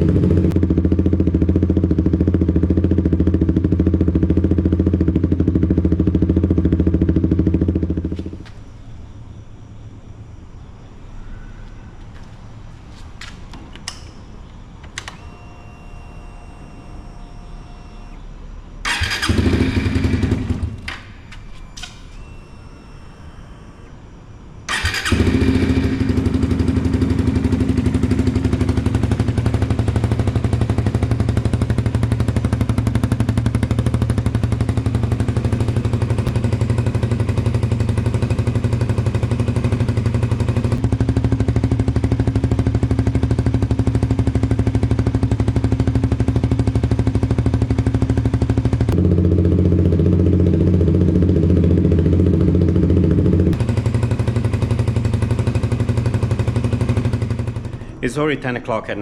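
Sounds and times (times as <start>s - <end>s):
motorcycle engine idling: 0.0s - 9.4s, 14.1s - 23.9s, 24.7s - 58.2s
clicks: 13.2s - 17.1s
loud engine burst: 18.8s - 21.1s.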